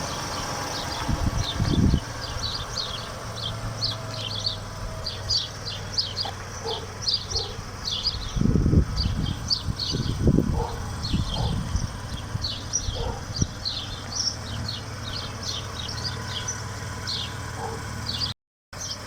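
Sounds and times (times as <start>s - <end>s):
low rumbles: 0.0s - 18.3s
small birds chirping: 0.0s - 19.0s.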